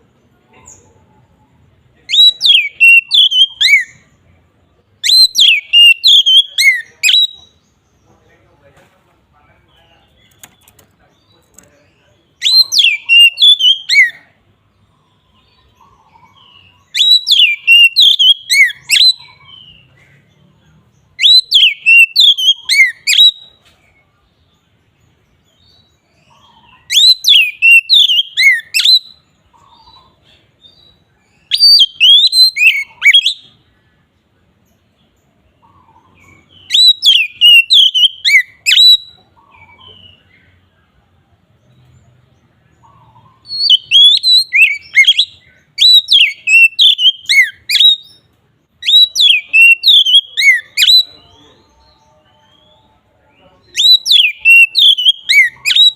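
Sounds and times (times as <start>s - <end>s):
bird whistled song: 2.1s - 4.2s, 4.9s - 7.8s, 12.3s - 14.3s, 15.1s - 19.9s, 21.1s - 23.6s, 25.4s - 33.7s, 35.6s - 40.6s, 42.7s - 55.9s.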